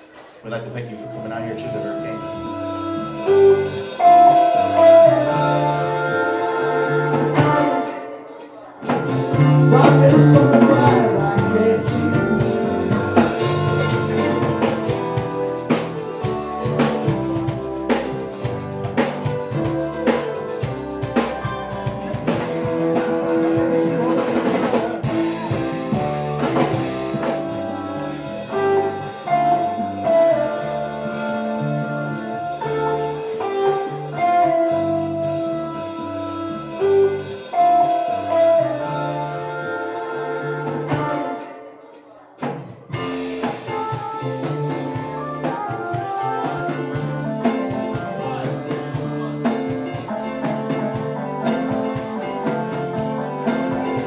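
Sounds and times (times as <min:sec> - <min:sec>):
long held notes: 0:00.0 - 0:42.3
guitar: 0:00.0 - 0:54.0
drum kit: 0:01.0 - 0:54.0
repeating low bass line: 0:09.0 - 0:37.4.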